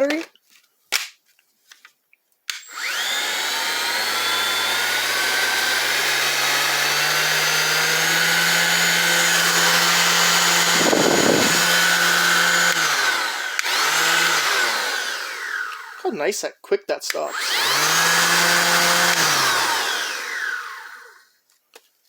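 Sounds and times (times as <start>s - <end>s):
orbit sander motor running: 2.6s - 16.0s, 17.3s - 21.2s.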